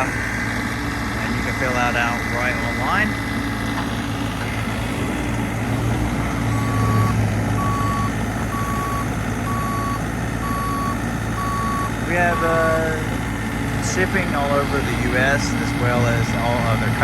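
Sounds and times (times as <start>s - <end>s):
excavator engine humming: 0.0s - 17.0s
motion alarm beeps: 6.4s - 12.8s.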